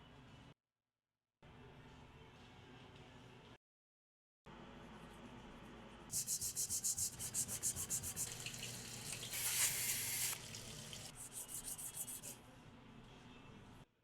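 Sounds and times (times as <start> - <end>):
abrasive rubbing on watch dial: 6.1 - 8.4, 11.1 - 12.4.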